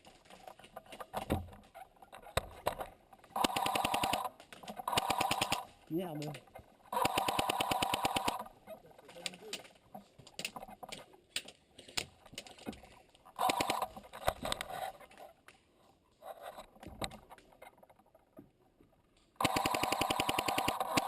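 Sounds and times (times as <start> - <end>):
airsoft rifle firing bursts: 3.4 - 5.7, 6.9 - 8.5, 13.4 - 14.0, 19.4 - 21.0.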